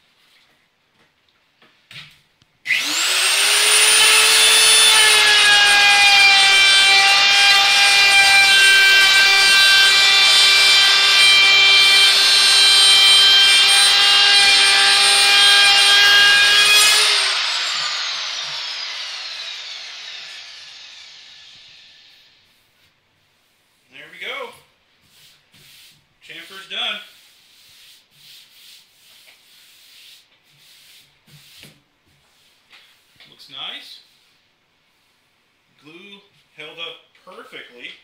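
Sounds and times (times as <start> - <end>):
router cutting wood: 2.7 - 22.4
wood router whining: 2.7 - 22.4.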